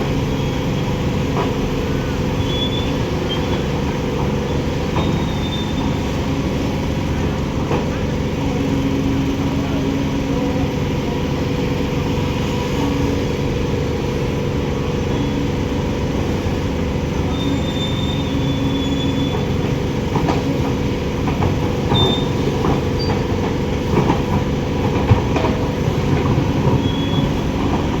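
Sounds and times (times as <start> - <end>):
construction machinery rumbling: 0.0 - 28.0
high metallic squeals: 17.3 - 19.6.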